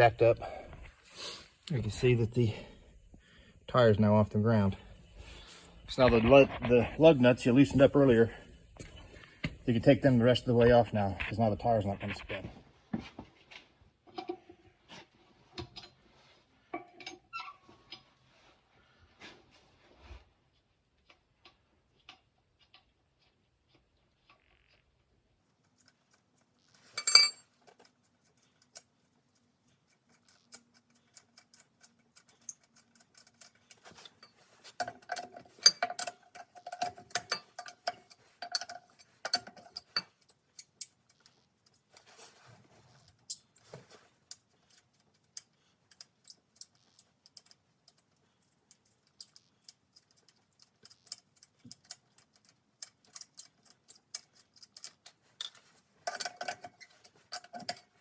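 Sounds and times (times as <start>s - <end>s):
tire iron clinking on lug nuts: 26.9s - 27.6s, 32.4s - 41.1s.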